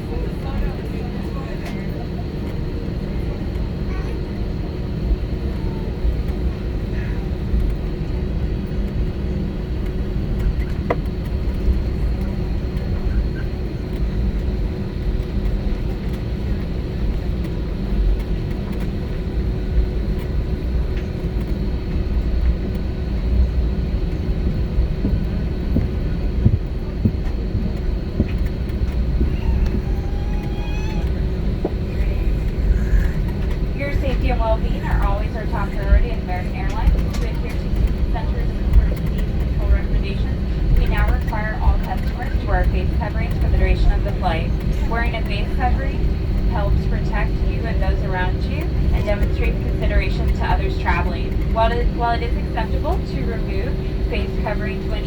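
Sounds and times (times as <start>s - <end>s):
airliner cabin low rumble: 0.0s - 55.0s
faint steady whine: 0.0s - 55.0s.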